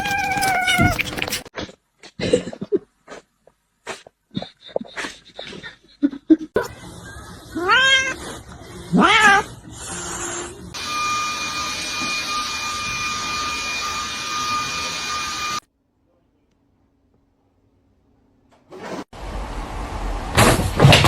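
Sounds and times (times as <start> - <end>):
cat meowing: 0.0 - 1.1, 8.9 - 9.5.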